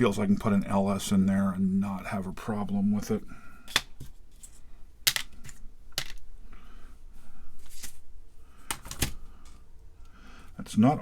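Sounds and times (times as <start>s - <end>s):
small parts clicking and tapping: 5.1s - 6.2s.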